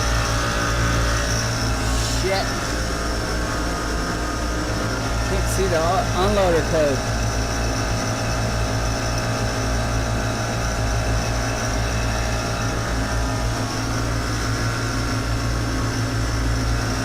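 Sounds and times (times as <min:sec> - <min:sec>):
steady tones: 0:00.0 - 0:07.2
hvac unit mechanical hum: 0:00.0 - 0:17.0
low electrical hum: 0:00.0 - 0:17.0.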